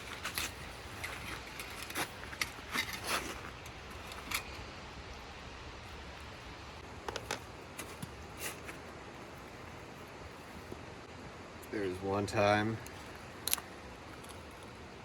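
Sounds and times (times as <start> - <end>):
grease gun metallic clicks: 12.8 - 14.7.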